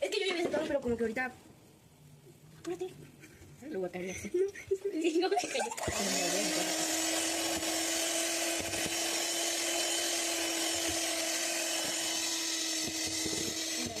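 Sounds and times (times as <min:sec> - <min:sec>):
electric mixer motor running: 0:05.8 - 0:14.0.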